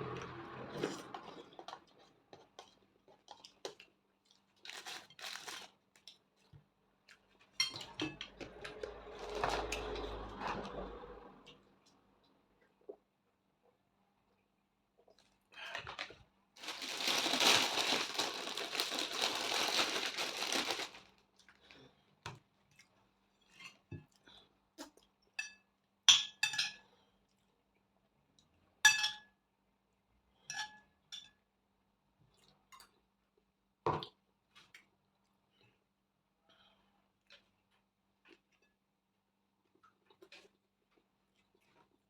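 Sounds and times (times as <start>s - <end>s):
dense rustling noise: 16.6s - 21.1s
cutlery clinking against dishes: 25.4s - 26.8s.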